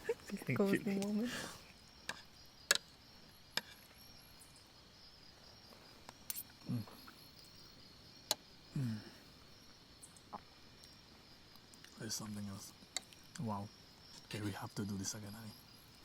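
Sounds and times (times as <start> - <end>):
insects chirring: 0.0 - 16.0.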